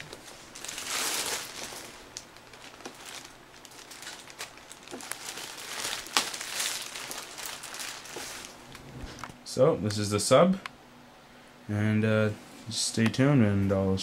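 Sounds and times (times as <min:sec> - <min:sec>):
packaging crinkling and rustling: 0:00.0 - 0:09.3.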